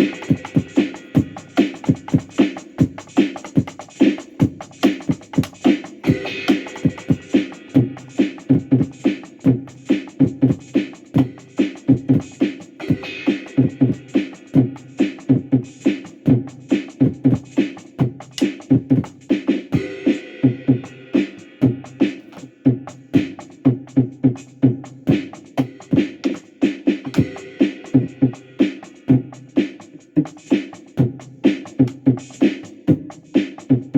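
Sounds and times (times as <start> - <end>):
electronic beat music: 0.0 - 18.9.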